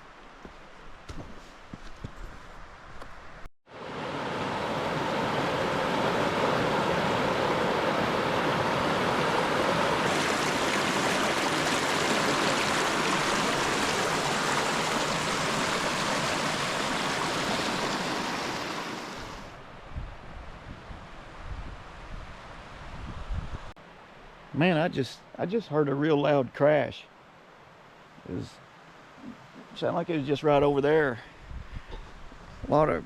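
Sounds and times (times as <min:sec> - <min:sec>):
creek water rushing: 0:03.7 - 0:19.6.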